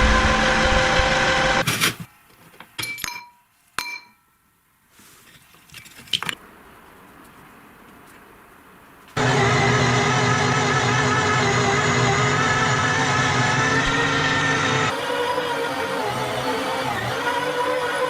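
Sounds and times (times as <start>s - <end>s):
electric meat grinder motor running: 0.0s - 1.6s, 9.2s - 18.0s.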